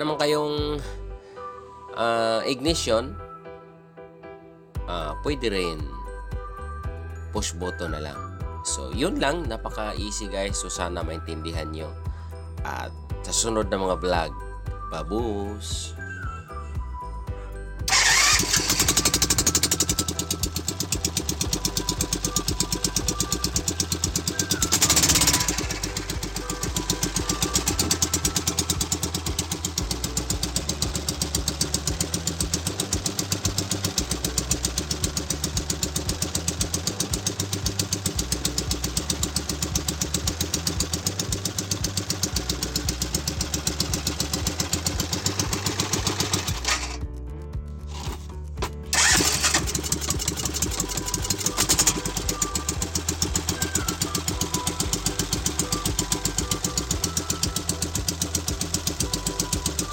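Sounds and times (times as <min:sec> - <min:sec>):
small gasoline engine running: 0:17.9 - 0:47.0, 0:47.9 - 0:48.2, 0:48.9 - 0:59.9.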